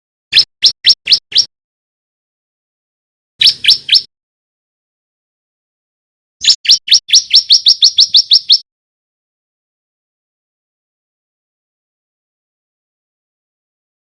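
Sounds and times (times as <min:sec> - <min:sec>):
bird singing rising notes: 0:03.4 - 0:04.1, 0:06.4 - 0:08.6.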